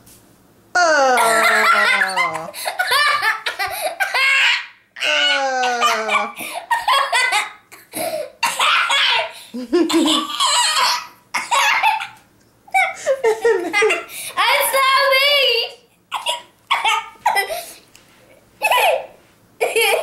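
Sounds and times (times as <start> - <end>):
boy laughing hard: 0.8 - 12.2, 12.8 - 14.2.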